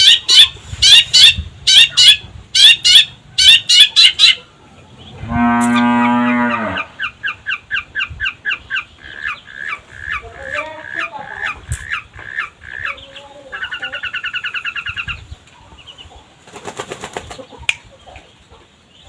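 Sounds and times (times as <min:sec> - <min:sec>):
bird harsh scratchy calls: 0:00.0 - 0:04.4, 0:05.6 - 0:15.3.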